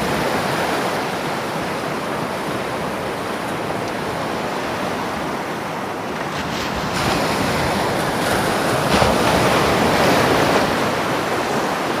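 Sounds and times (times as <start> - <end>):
ocean waves rushing: 0.0 - 12.0.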